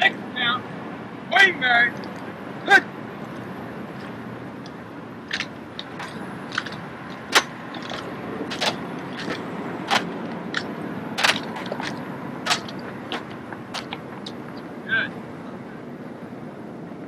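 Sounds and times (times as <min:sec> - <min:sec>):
rifles slapping and clacking: 0:04.0 - 0:14.4.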